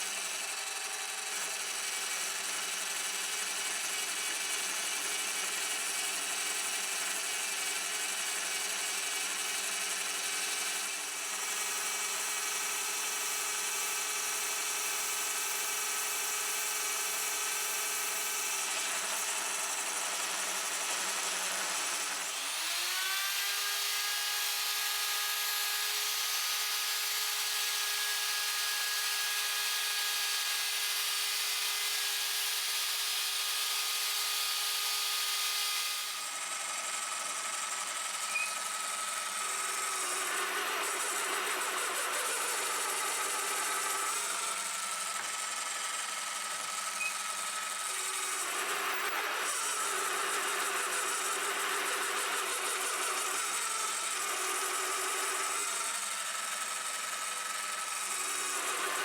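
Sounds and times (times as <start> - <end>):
power tool motor whine: 0.0 - 59.0.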